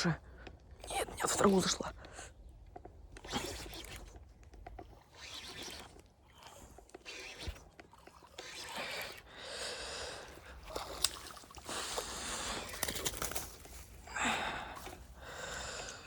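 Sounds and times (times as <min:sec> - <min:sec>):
person breathing hard: 0:11.6 - 0:12.8, 0:14.0 - 0:16.0.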